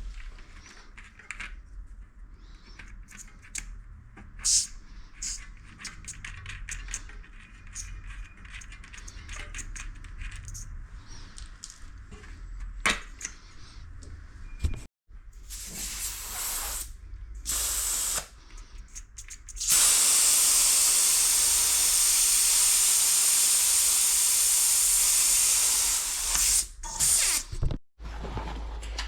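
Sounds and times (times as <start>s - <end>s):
spray-paint can hissing: 4.4s - 5.4s, 19.6s - 27.5s.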